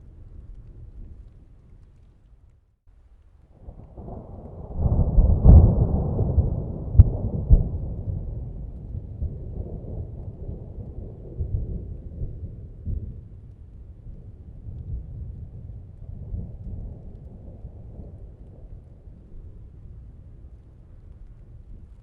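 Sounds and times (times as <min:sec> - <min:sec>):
thunder rumbling: 0:03.5 - 0:22.0
thunder cracks: 0:03.6 - 0:13.2.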